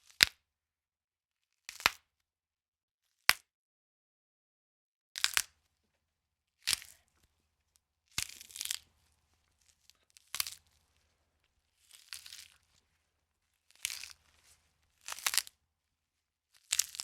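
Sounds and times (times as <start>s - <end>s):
crunchy bone cracks: 5.2s - 5.6s, 6.7s - 7.0s, 9.8s - 10.7s, 11.9s - 12.7s, 13.7s - 14.2s, 15.0s - 15.6s, 16.6s - 17.0s.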